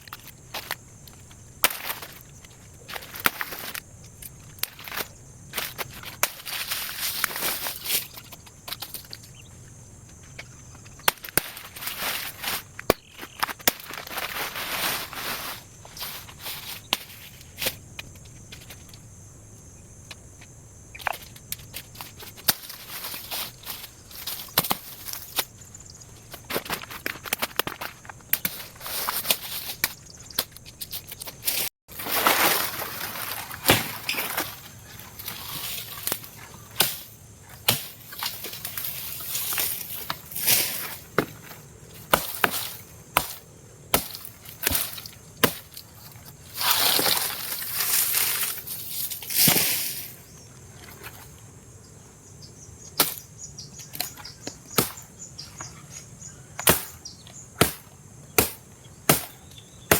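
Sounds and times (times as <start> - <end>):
rustling and scraping: 0.0 - 9.4, 10.0 - 19.1, 20.4 - 51.6
blade chopping wood: 1.6 - 2.2, 33.6 - 34.6, 36.0 - 38.6, 39.6 - 45.8, 53.0 - 53.2, 54.0 - 55.1, 56.6 - 57.0, 57.6 - 59.9.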